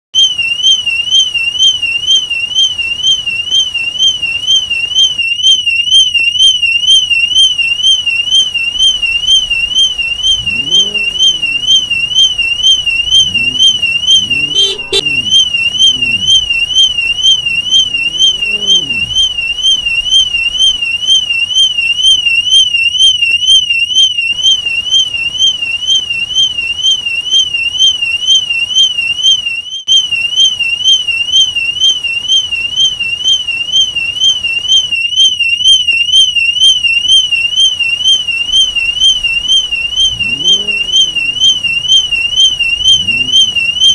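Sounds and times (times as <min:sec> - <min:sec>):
car alarm siren warbling: 0:00.2 - 0:43.9
faint low rising and falling tone: 0:09.0 - 0:20.6, 0:38.7 - 0:43.9.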